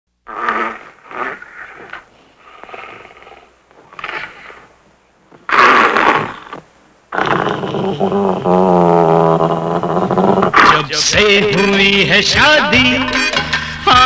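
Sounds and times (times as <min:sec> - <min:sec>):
woman snoring loudly: 0:00.3 - 0:04.6, 0:07.2 - 0:10.6.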